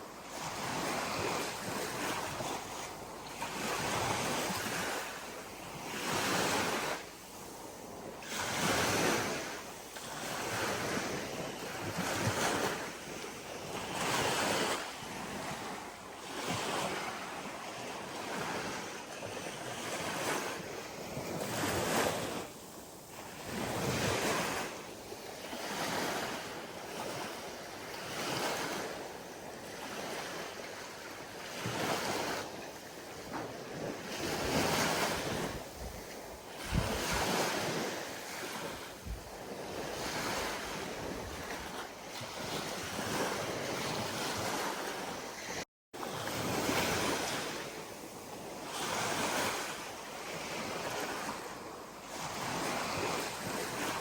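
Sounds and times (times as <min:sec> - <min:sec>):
ocean waves breaking: 0:00.0 - 0:54.0
wind buffeting microphone: 0:23.2 - 0:54.0.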